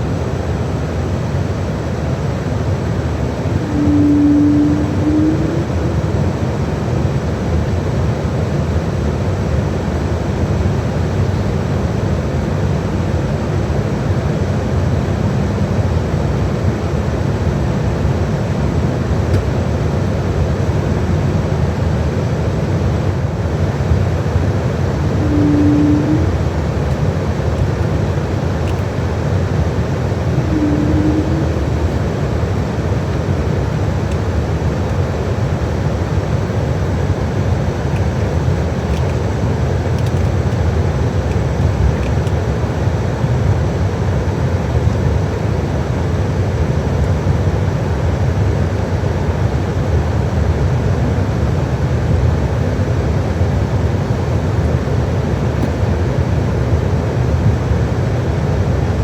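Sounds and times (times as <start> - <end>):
airliner cabin rumble: 0.0 - 59.0
short low hum: 2.7 - 7.9, 24.7 - 39.5.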